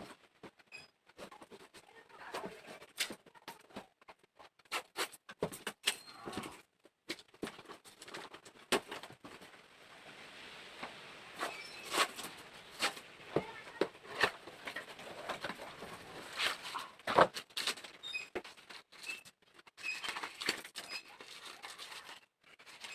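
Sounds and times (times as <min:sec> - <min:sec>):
short high squeaks: 0:11.4 - 0:12.0
packaging crackling and clicking: 0:13.8 - 0:22.9.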